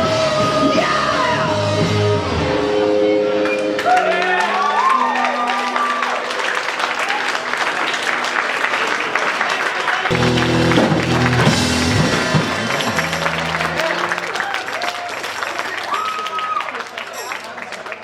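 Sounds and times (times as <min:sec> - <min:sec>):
loud rock music: 0:00.0 - 0:03.4, 0:10.1 - 0:14.4
crowd applauding and cheering: 0:03.2 - 0:18.0
held guitar note: 0:10.1 - 0:14.4.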